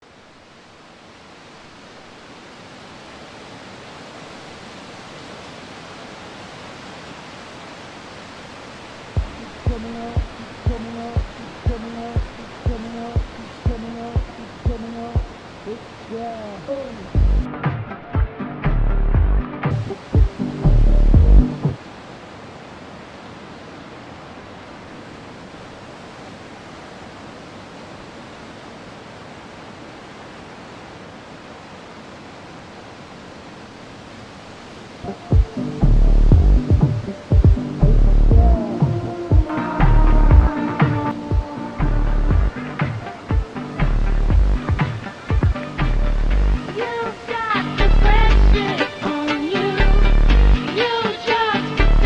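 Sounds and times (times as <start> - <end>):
steady rushing hiss: 0.0 - 52.0
music with a beat: 9.2 - 15.3, 17.2 - 21.8, 35.3 - 52.0.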